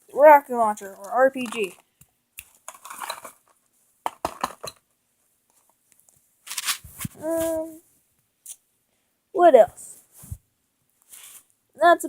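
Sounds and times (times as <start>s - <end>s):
plastic toy pieces clicking: 1.0s - 1.8s.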